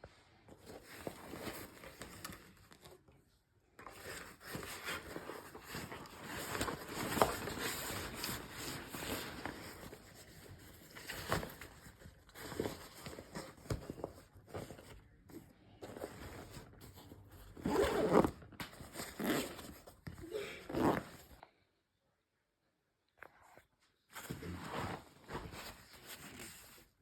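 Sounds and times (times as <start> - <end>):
fabric backpack rustling: 3.9 - 11.9, 17.5 - 19.8, 20.6 - 21.3.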